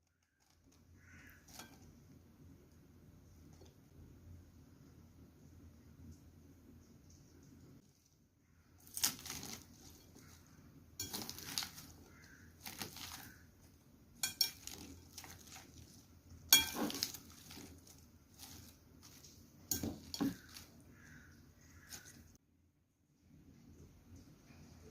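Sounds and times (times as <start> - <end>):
utensils clinking against dishes: 11.0 - 11.9, 14.2 - 15.7, 16.5 - 17.7, 18.4 - 20.7.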